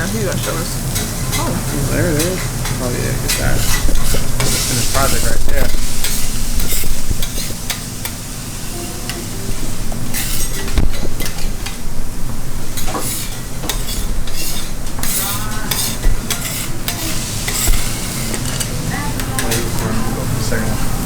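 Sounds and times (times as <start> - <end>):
beef sizzling: 0.0 - 21.0
metal utensils clicking and scraping: 10.1 - 11.8, 12.8 - 19.8.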